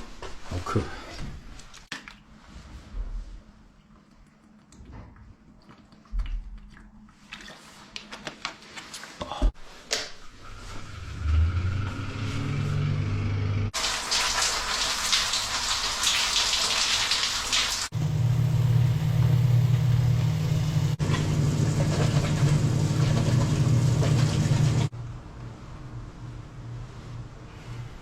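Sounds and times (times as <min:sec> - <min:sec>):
water spraying hard: 0:13.8 - 0:17.9.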